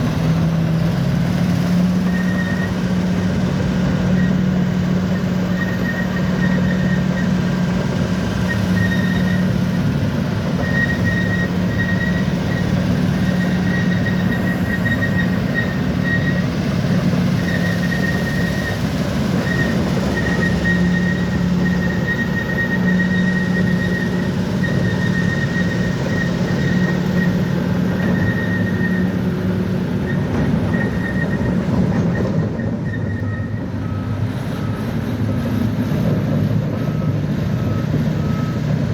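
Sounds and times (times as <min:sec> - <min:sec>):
bulldozer diesel engine: 0:00.0 - 0:38.9
high squeal: 0:01.9 - 0:03.3, 0:05.4 - 0:07.4, 0:08.4 - 0:09.6, 0:10.6 - 0:34.8.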